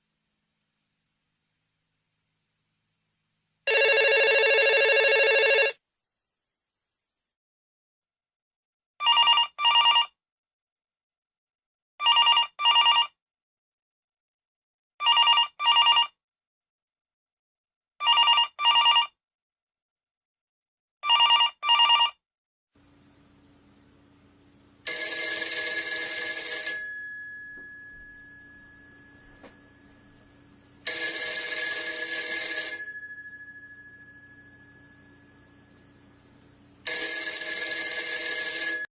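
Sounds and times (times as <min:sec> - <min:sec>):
phone double trill ringtone: 0:03.7 - 0:05.8, 0:24.9 - 0:38.9
telephone bell ringing: 0:03.7 - 0:05.8, 0:09.0 - 0:10.1, 0:12.0 - 0:13.1, 0:15.0 - 0:16.1, 0:18.0 - 0:19.1, 0:21.1 - 0:22.2, 0:24.9 - 0:38.9
faint hum: 0:22.8 - 0:24.9, 0:28.0 - 0:30.9, 0:34.2 - 0:36.9.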